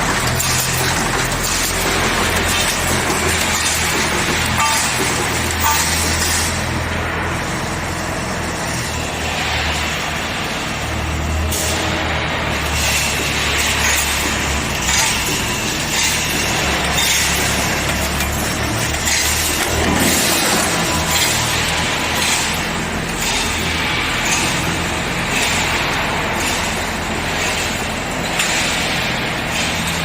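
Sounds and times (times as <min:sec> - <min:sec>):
welding machine electrical hum: 0:00.0 - 0:30.0.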